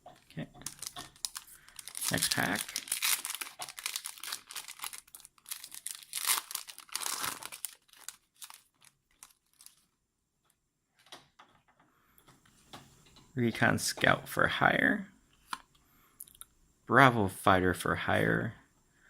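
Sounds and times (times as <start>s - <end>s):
foil pack tearing and crinkling: 0.6s - 9.8s.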